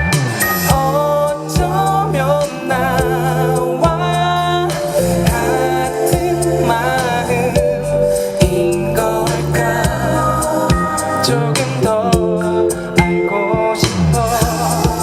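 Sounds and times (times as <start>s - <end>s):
live band music: 0.0s - 15.0s
person singing wavering notes: 0.4s - 15.0s
drum hits: 8.4s - 10.1s.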